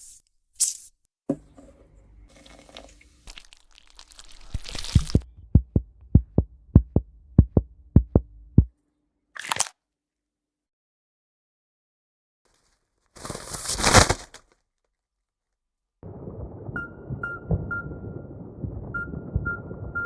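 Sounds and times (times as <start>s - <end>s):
low hum: 4.8s - 8.7s, 16.0s - 20.0s
heartbeat thumps: 4.9s - 8.7s, 16.4s - 20.0s.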